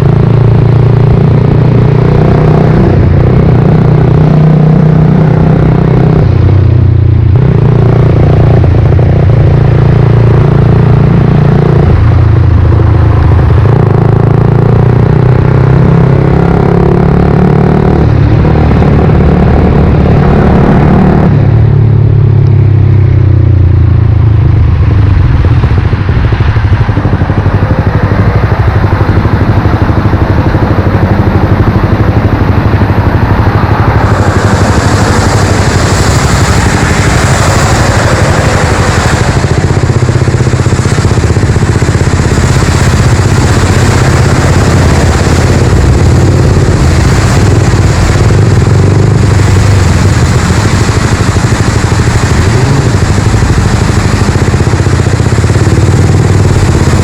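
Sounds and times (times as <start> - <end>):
motorcycle engine changing gears: 24.9 - 57.0.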